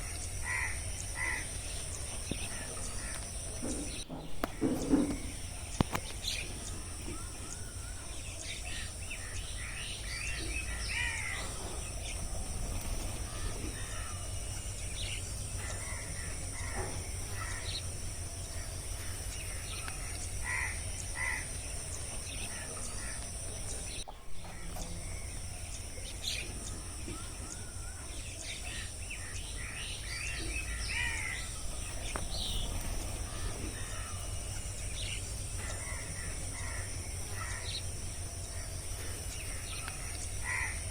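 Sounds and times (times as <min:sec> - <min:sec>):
birds chirping and trilling: 0:00.0 - 0:40.9
high insect drone: 0:00.0 - 0:40.9
low background rumble: 0:00.0 - 0:40.9.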